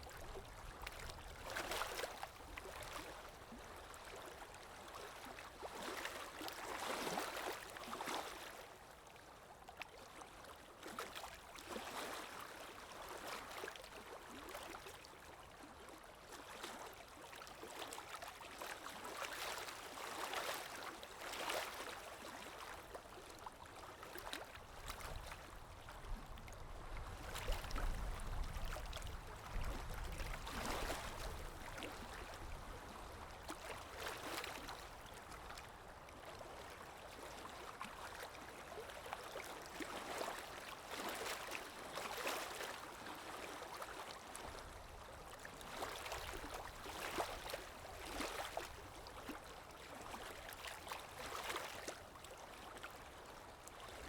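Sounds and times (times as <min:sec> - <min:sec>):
waves lapping ashore: 0:17.4 - 0:54.0.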